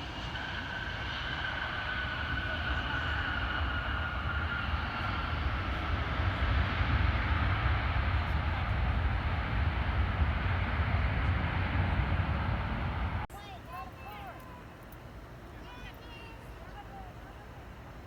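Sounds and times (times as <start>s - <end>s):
jet airliner passing: 0.0s - 13.3s
jet engine high whine: 0.0s - 13.3s.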